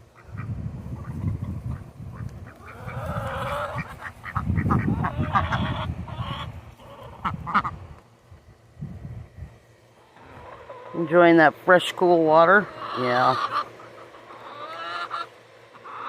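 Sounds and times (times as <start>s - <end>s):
low rumbling noise: 0.0s - 10.6s
ducks quacking: 0.1s - 8.0s, 10.2s - 11.5s, 12.5s - 16.0s.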